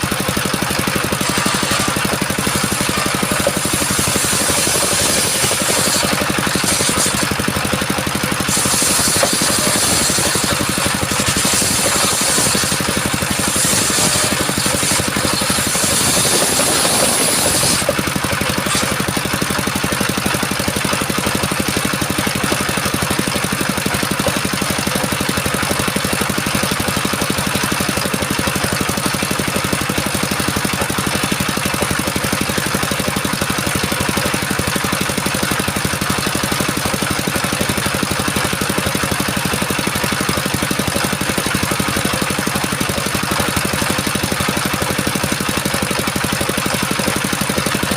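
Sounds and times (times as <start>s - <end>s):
diesel engine running: 0.0s - 47.9s
saw blade hissing through wood: 1.0s - 7.4s, 8.4s - 19.1s.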